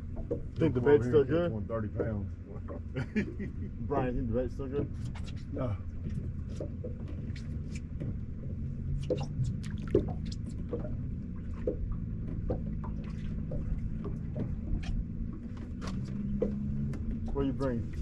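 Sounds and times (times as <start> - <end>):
low motor hum: 0.0 - 18.0
water drips and splashes: 4.6 - 18.0.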